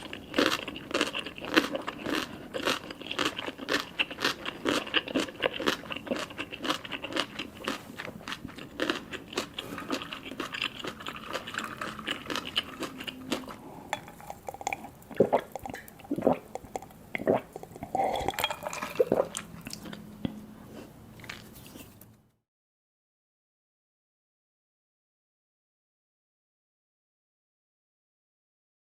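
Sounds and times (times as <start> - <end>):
person chewing food: 0.0 - 22.0.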